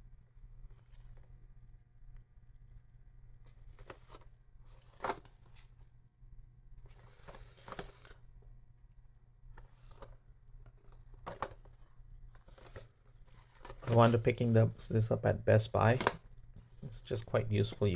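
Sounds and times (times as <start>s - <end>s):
faint low hum: 0.0s - 17.9s
cardboard packaging rustling: 3.5s - 5.8s, 6.9s - 8.2s, 9.6s - 14.9s, 15.6s - 17.9s.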